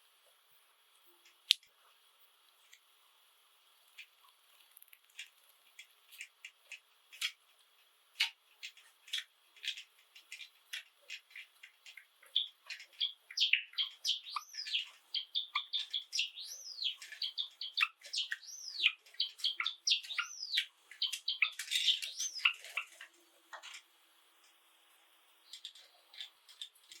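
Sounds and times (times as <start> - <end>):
sparrow singing clicks and whistles: 11.3 - 23.0.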